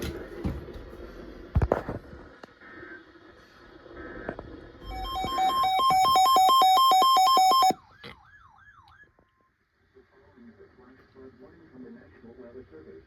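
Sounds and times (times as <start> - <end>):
two-tone alert beep pulsing: 4.8 - 7.8.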